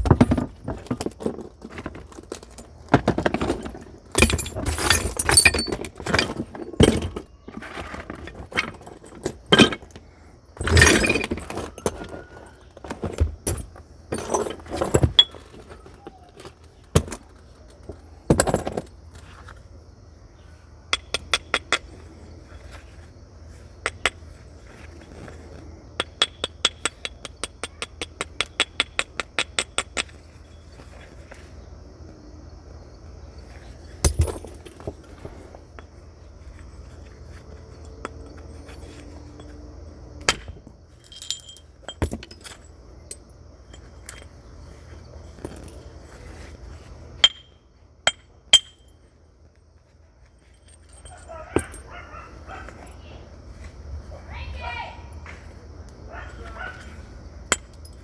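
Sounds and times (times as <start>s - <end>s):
stone striking flint: 21.0s - 21.9s, 25.0s - 30.2s, 34.0s - 34.8s, 45.4s - 45.8s
scraping on flint: 21.0s - 31.7s, 43.7s - 47.2s.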